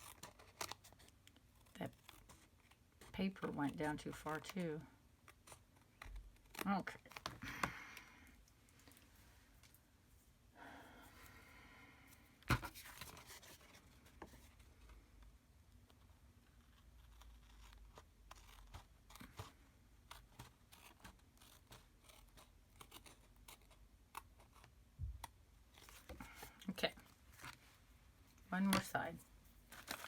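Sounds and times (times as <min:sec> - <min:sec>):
paper and tools rustling: 0:12.5 - 0:15.1, 0:25.7 - 0:30.0.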